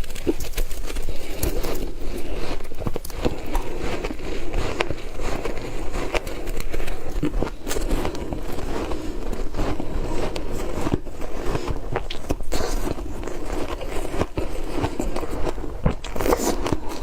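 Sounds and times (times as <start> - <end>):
ice crunching in mouth: 0.0 - 17.0.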